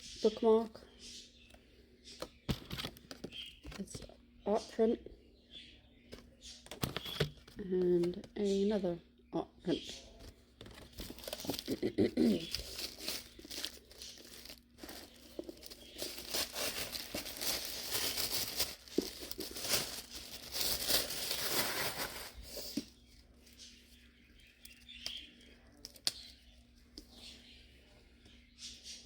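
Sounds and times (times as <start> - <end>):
wrapping crinkling and tearing: 10.8 - 22.8.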